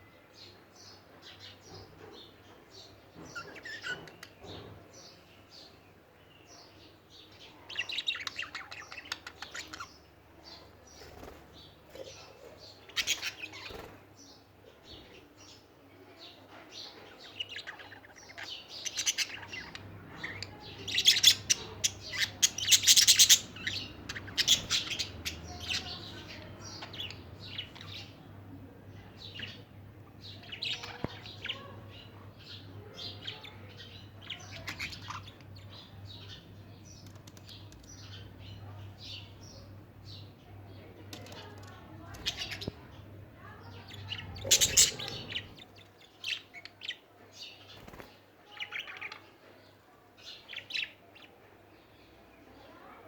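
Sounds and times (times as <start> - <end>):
budgerigars chirping: 1.3 - 4.7, 7.1 - 10.1, 11.2 - 13.9, 17.1 - 28.4, 29.0 - 40.5, 41.4 - 47.0.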